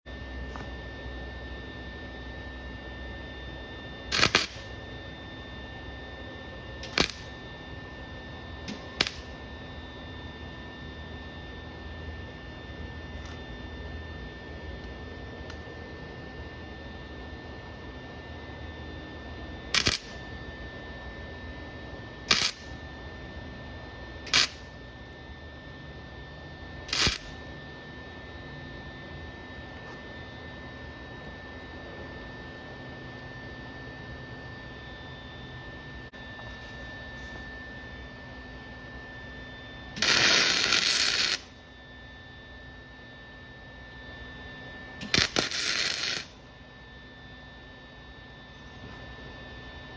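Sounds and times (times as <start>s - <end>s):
electrical hum: 0.1s - 49.9s
welding arc crackling: 4.1s - 4.8s, 6.8s - 7.4s, 8.7s - 9.3s, 19.7s - 20.2s, 22.3s - 22.8s, 24.3s - 24.7s, 26.9s - 27.4s, 40.0s - 41.6s, 45.0s - 46.4s.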